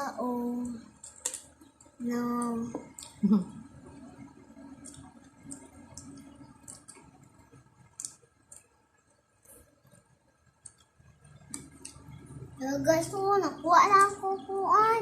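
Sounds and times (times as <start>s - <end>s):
eating clicks and smacks: 0.9s - 3.2s, 4.8s - 12.2s.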